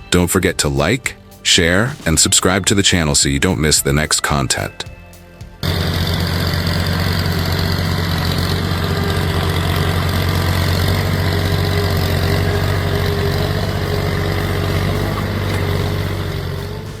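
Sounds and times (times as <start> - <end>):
engine idling: 5.6 - 17.0.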